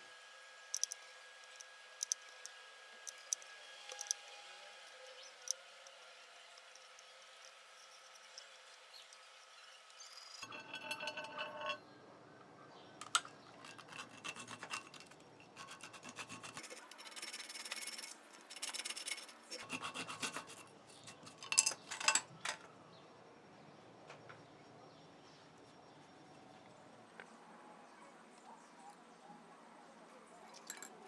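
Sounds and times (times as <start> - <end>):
sharp clicks: 0.7 - 10.2.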